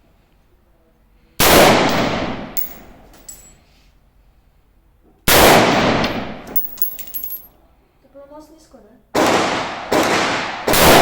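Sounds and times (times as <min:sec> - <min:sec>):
brass casings clinking: 0:02.6 - 0:03.6, 0:06.5 - 0:07.5
rifle shots echoing: 0:09.2 - 0:11.0.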